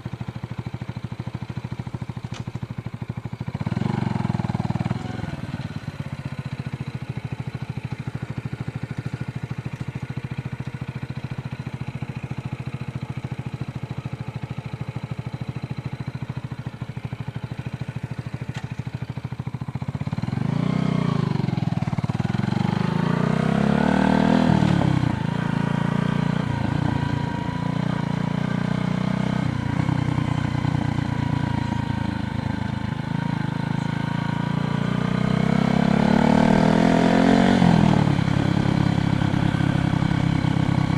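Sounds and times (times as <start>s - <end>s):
road traffic rumble: 0.0s - 40.9s
vehicles accelerating and passing: 31.0s - 40.9s.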